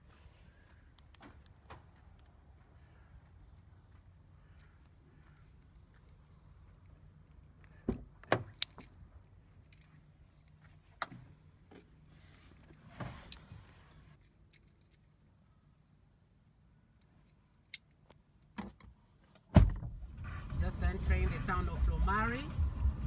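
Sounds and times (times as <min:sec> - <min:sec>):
faint low hum inside a car: 0:19.3 - 0:23.0.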